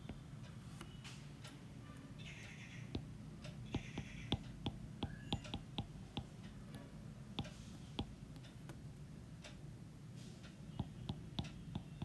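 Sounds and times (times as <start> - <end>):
pen ticking on paper: 2.2 - 6.8, 10.7 - 12.0.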